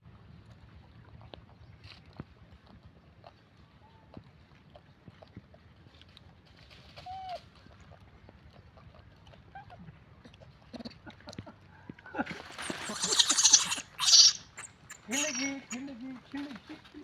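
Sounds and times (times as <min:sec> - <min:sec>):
faint short animal calls: 0:12.5 - 0:15.9.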